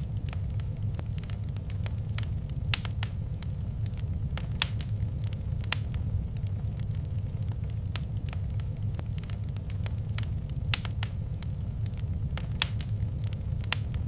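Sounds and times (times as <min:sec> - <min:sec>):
fire crackling and popping: 0:00.0 - 0:14.0
fire flames rumbling: 0:00.0 - 0:14.0.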